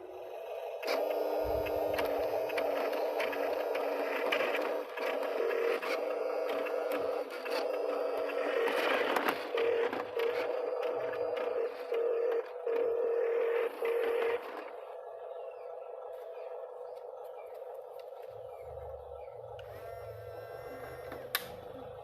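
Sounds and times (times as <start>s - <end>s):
small electric motors whining: 0.0s - 22.0s.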